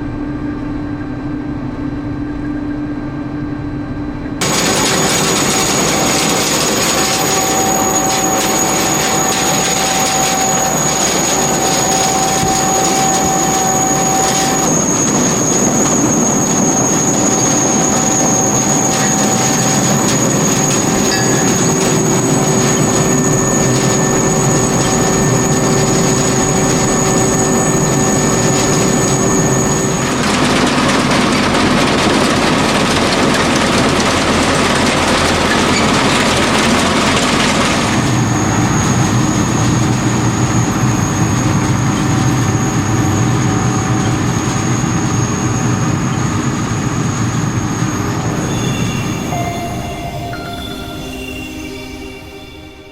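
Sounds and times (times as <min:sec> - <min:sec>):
high machine whines: 0:00.0 - 0:52.9
harvester mechanical clatter: 0:04.4 - 0:47.1.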